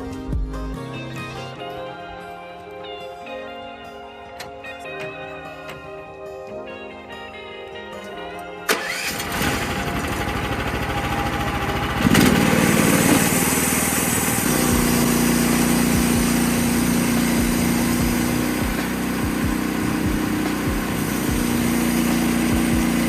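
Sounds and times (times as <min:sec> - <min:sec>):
music: 0:00.0 - 0:23.0
engine starting and running: 0:08.7 - 0:23.0.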